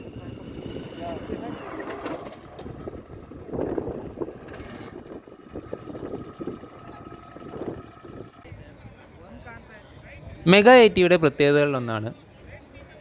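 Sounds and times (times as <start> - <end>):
small engine surging unevenly: 0.0 - 8.5
wind on microphone: 0.0 - 8.9.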